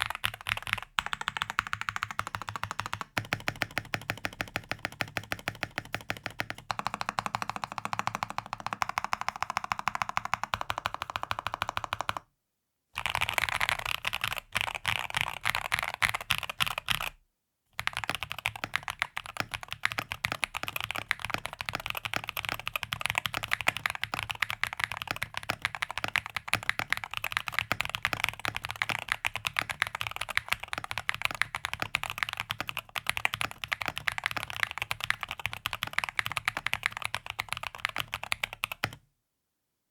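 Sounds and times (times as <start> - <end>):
fast typing on mechanical keyboard: 0.0 - 12.2, 13.0 - 17.2, 17.8 - 39.0.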